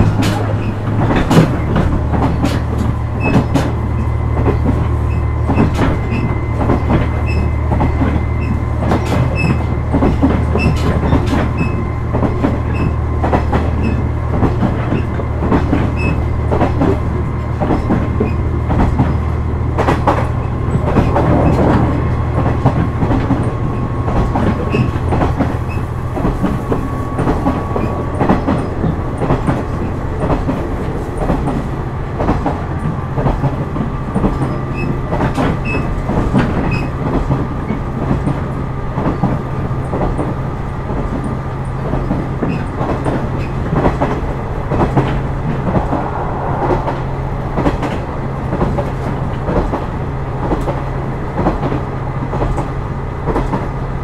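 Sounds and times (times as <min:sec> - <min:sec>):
low diesel engine drone: 0:00.0 - 0:36.5, 0:43.8 - 0:50.4
wheels clacking over rail joints: 0:00.0 - 0:46.5.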